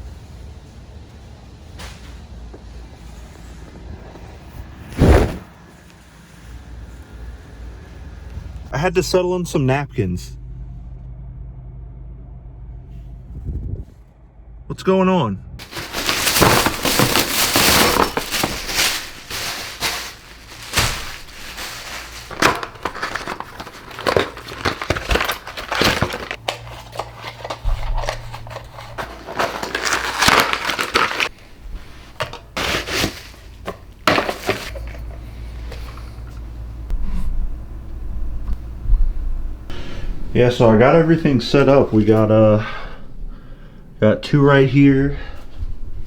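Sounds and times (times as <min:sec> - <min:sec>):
packaging crinkling and rustling: 0:15.6 - 0:36.3.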